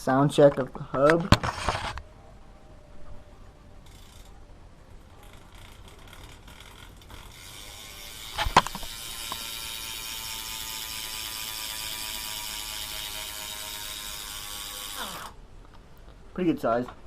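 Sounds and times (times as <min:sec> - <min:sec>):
bicycle hub ratchet buzzing: 0:03.8 - 0:04.4, 0:05.2 - 0:15.4.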